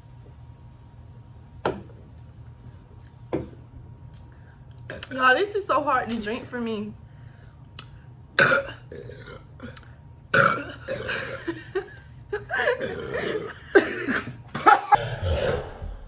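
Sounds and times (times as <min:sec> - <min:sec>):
loud burps: 0:08.4 - 0:11.8, 0:12.6 - 0:15.7.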